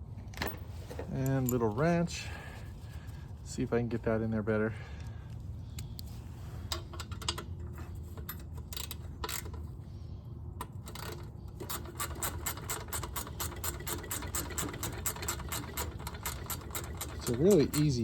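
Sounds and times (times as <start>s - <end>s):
ratchet wrench clicking: 8.2s - 9.6s, 10.6s - 18.0s.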